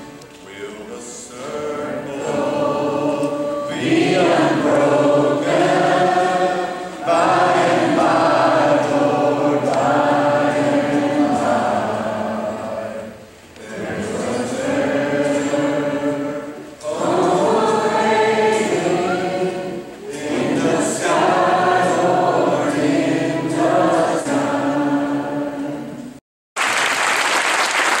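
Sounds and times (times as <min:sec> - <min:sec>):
gospel choir singing in harmony: 0:00.0 - 0:26.2.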